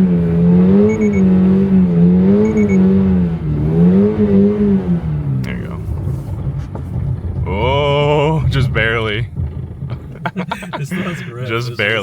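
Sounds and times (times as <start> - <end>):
car engine revving: 0.0 - 12.0
short triple beep: 0.8 - 1.3, 2.4 - 2.9.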